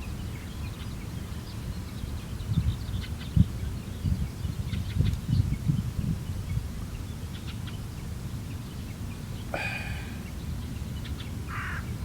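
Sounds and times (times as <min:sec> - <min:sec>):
harsh bird call: 0:09.6 - 0:10.3.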